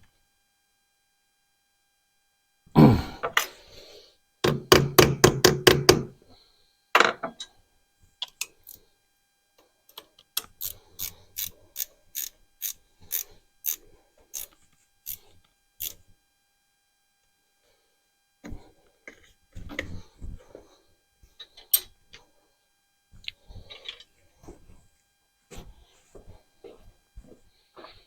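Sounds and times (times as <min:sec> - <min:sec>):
wrench knocking: 0:04.4 - 0:06.1
ratchet wrench clicking: 0:10.4 - 0:15.2.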